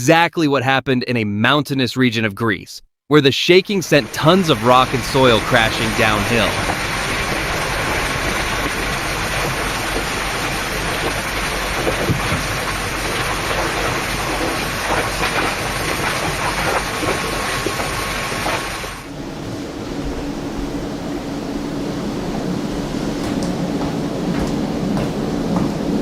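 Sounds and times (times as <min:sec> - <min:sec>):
rock and soil crashing downhill: 0:04.1 - 0:18.8.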